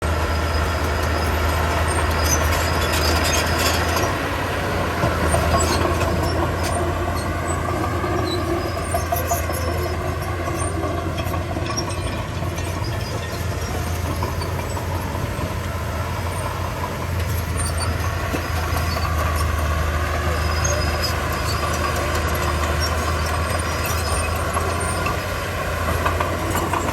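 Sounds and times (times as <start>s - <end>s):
bulldozer diesel engine running: 0.0s - 26.9s.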